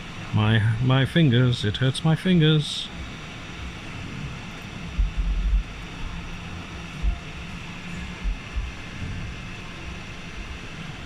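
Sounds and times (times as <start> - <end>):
fan whirring and hissing: 0.0 - 11.0
low hum: 0.0 - 11.0
dull low bumps: 5.0 - 5.8.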